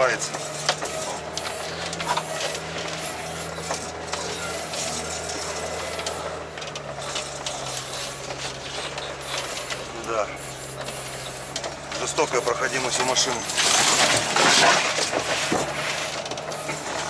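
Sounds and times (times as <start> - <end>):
tracked vehicle engine running: 0.0 - 17.0
mechanical clatter of clicks and rattles: 3.6 - 9.9.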